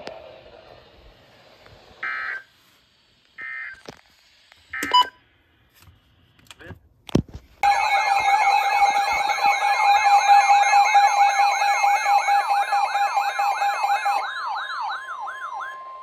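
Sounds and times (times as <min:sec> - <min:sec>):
rapid siren-like sweep: 0:08.4 - 0:16.0.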